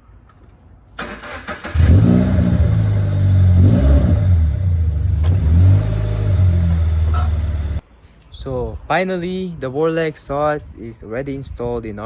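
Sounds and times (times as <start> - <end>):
car engine starting and revving: 1.0 - 7.8.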